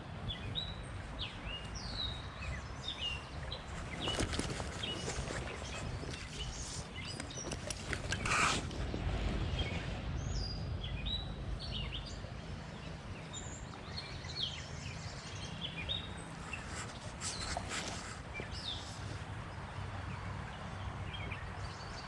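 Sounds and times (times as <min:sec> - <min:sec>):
songbirds chirping: 0:00.0 - 0:22.0
steady low rumble: 0:04.6 - 0:16.4.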